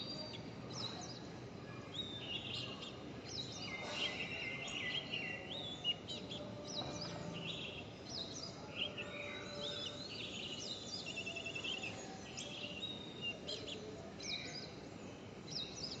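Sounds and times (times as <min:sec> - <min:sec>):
birds chirping and whistling: 0:02.0 - 0:13.7.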